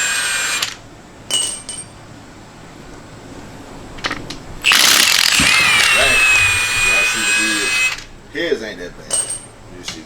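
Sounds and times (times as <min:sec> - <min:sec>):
power tool motor whine: 0:00.0 - 0:00.8, 0:04.6 - 0:08.1
small metal parts clinking: 0:09.1 - 0:10.0.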